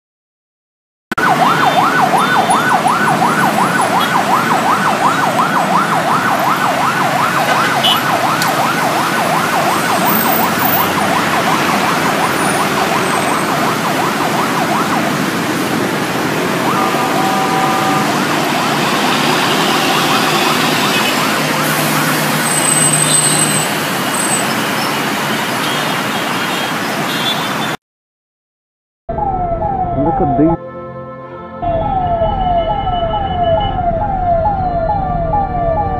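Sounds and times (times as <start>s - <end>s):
ambulance siren yelping: 1.1s - 24.4s, 29.1s - 30.7s, 31.6s - 35.9s
road traffic noise: 1.1s - 27.8s, 29.1s - 35.9s
vehicle horn: 7.8s - 8.0s, 16.6s - 22.0s.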